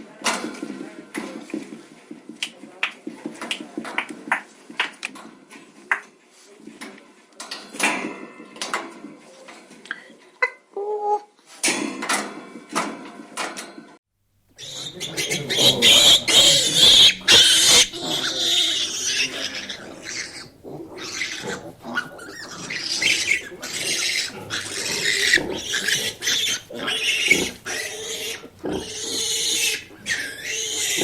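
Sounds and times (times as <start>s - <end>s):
pigs squealing: 14.6s - 31.0s.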